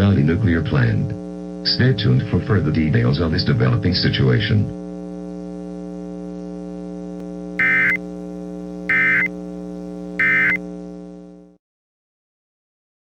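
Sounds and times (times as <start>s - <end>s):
steady electrical hum: 7.1s - 11.5s
digital data tone bursts: 7.6s - 8.0s, 8.9s - 9.3s, 10.2s - 10.6s.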